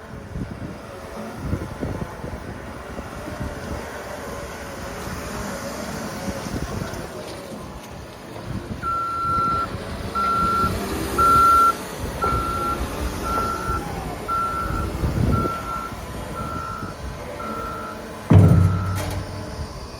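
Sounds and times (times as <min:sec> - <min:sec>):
loader engine running: 0:05.8 - 0:19.9
backup alarm beeping: 0:08.9 - 0:19.8.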